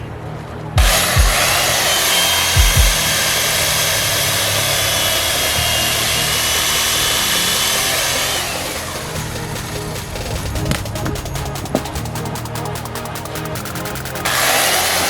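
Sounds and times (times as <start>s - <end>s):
chainsaw cutting ice: 0.8s - 10.4s, 14.2s - 15.0s.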